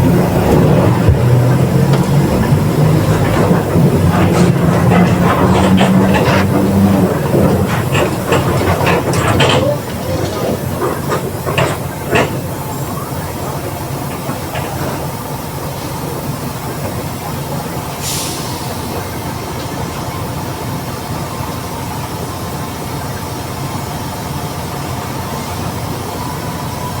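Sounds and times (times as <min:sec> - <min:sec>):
diesel bus engine running: 0:00.0 - 0:27.0
short hiss: 0:18.0 - 0:18.9.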